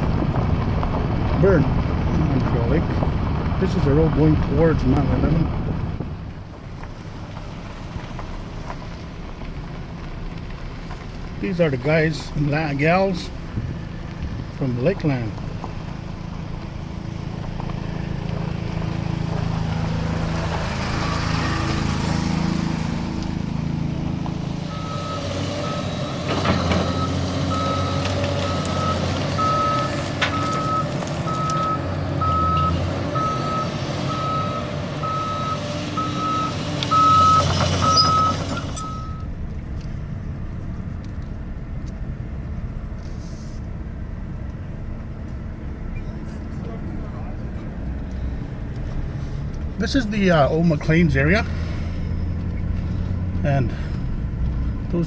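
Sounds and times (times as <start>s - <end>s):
truck engine running: 0.0s - 55.0s
reversing alarm beeping: 24.7s - 39.3s.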